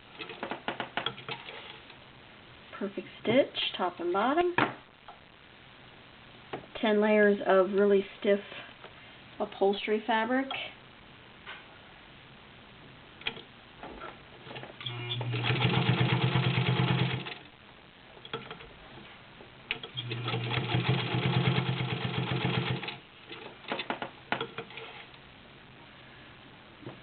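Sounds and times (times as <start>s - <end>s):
sewing machine sewing: 14.8s - 17.4s, 19.7s - 23.0s.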